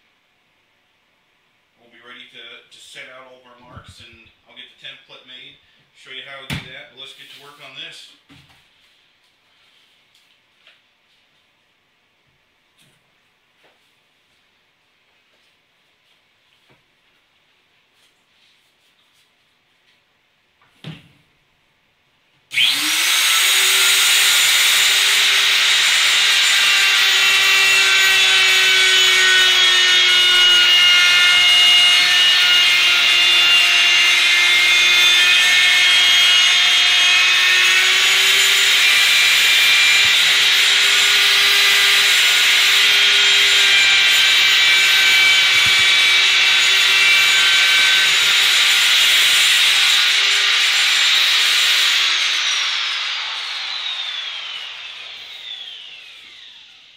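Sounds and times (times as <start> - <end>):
router whining: 22.5 - 56.9.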